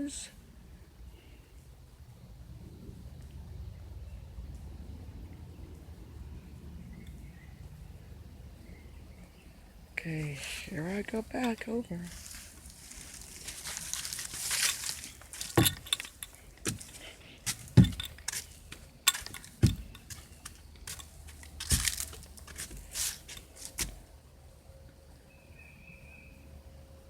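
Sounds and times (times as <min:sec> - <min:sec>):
footsteps crunching: 0:10.2 - 0:24.1
rustling: 0:10.2 - 0:24.1.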